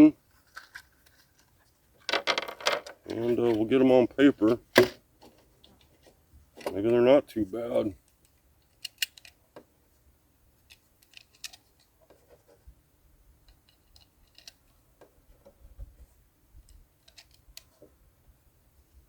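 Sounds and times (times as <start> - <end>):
cartridges clicking into magazine: 8.6 - 9.4.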